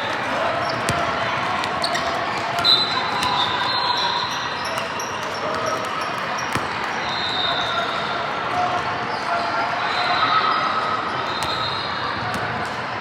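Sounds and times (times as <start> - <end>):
murmur of spectators: 0.0 - 13.0
sneaker squeaks on court: 0.1 - 8.2, 10.9 - 12.9
ball bouncing thud: 11.4 - 12.7.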